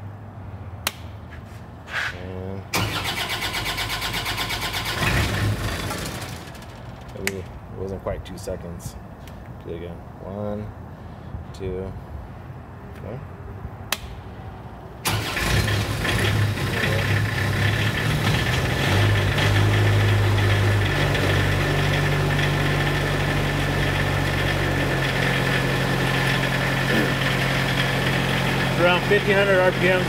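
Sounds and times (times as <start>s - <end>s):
diesel engine starting and running: 2.7s - 7.7s, 14.9s - 30.0s.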